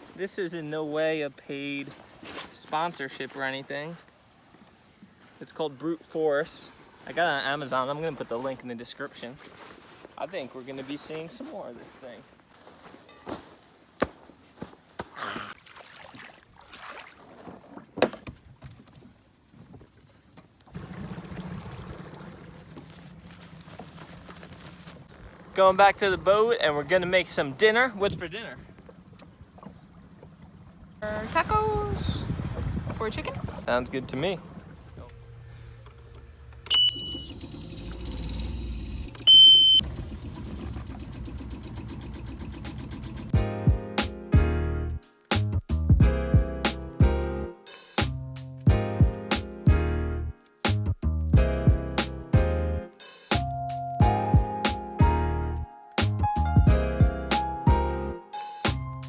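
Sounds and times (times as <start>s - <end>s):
small outboard motor running: 20.8s - 26.2s, 28.8s - 33.6s, 34.4s - 43.4s
engine running steadily: 34.4s - 43.4s
high electronic beeps: 36.7s - 37.4s, 39.2s - 39.8s.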